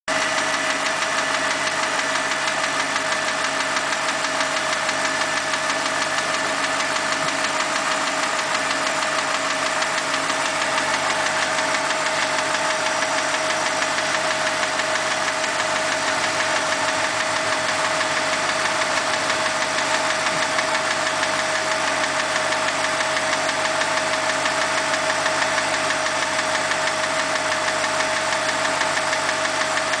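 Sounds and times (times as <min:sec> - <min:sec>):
car engine running: 0:00.1 - 0:30.0
fast even engine ticking: 0:00.1 - 0:30.0
steady engine whine: 0:03.7 - 0:20.9.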